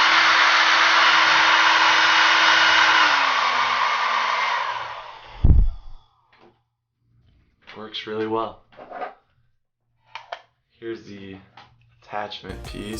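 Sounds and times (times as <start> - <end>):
hair dryer blowing: 0.0 - 5.7
thump: 5.4 - 5.8.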